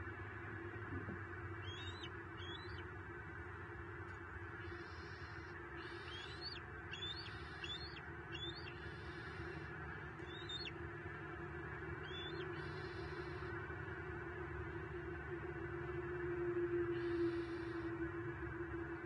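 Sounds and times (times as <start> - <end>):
low hum and hiss: 0.0 - 19.0
small birds high calls: 1.1 - 14.8, 16.8 - 17.9.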